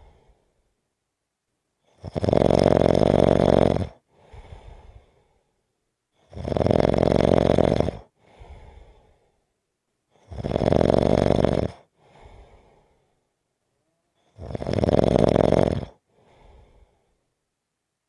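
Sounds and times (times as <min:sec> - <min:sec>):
person snoring: 0:02.0 - 0:03.9, 0:06.3 - 0:08.0, 0:10.3 - 0:11.8, 0:14.4 - 0:16.0.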